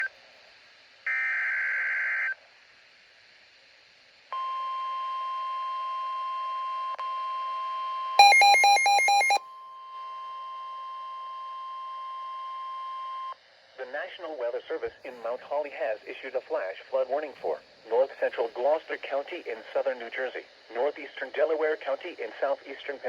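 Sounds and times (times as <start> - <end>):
digital header tones: 8.2 - 9.4
rapidly pulsing electronic beeping: 8.2 - 9.4
steady warning alarm tone: 8.2 - 9.4.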